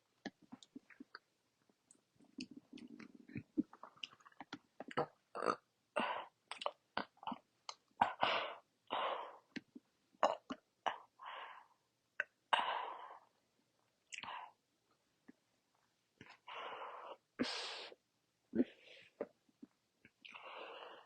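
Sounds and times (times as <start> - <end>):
person burping: 4.8 - 5.7.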